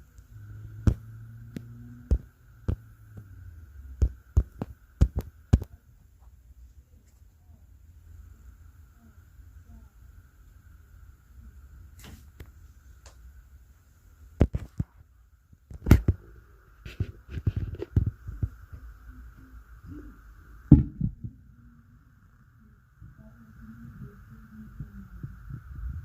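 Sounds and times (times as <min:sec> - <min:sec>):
heavy thuds through ceiling: 0:20.6 - 0:21.5.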